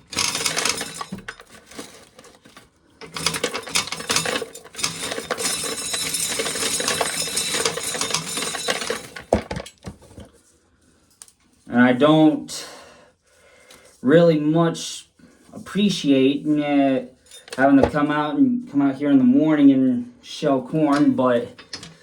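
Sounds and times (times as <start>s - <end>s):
corn sheller clattering: 0.0s - 10.3s.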